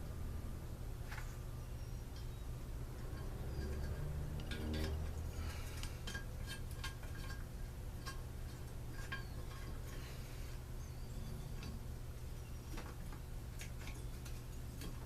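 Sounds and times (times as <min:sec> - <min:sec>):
steady low hum: 0:00.0 - 0:15.0
metal parts and tools clinking: 0:03.0 - 0:10.1.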